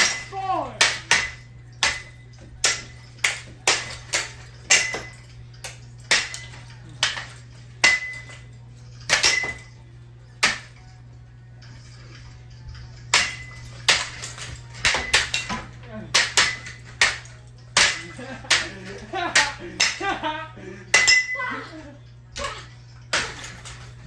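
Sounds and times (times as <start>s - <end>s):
metallic hits on ceiling fan: 0.0s - 9.8s, 13.1s - 20.3s, 20.9s - 21.5s, 22.4s - 24.0s.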